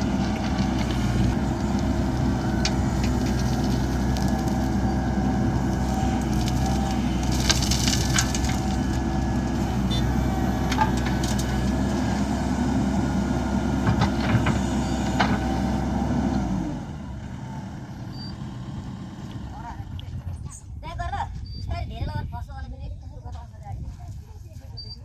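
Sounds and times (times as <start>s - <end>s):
diesel engine running: 0.0s - 20.5s
sharp knocks and clatters: 13.8s - 15.5s.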